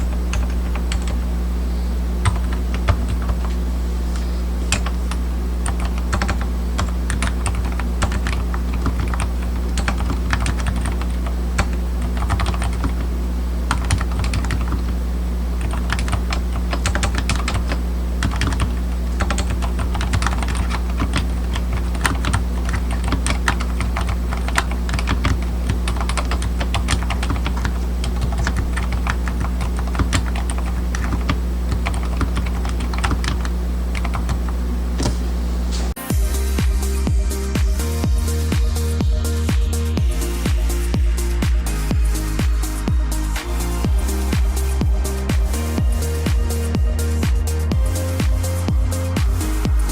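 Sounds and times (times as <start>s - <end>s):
steady low hum: 0.0s - 49.9s
mechanical keyboard typing: 0.1s - 1.2s, 2.2s - 3.5s, 4.7s - 13.1s, 13.7s - 15.0s, 15.6s - 34.6s.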